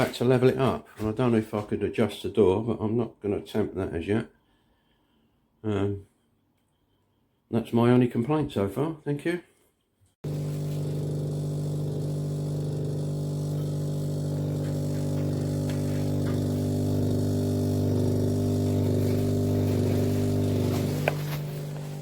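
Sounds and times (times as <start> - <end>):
fridge compressor humming: 10.2 - 22.0.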